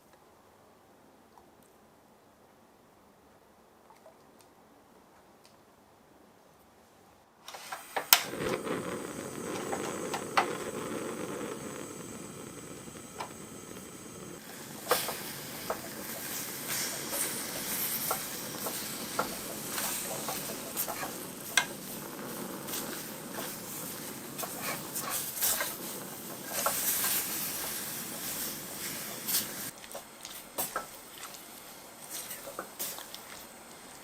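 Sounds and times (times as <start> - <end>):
filling sizzling and bubbling: 8.2 - 34.0.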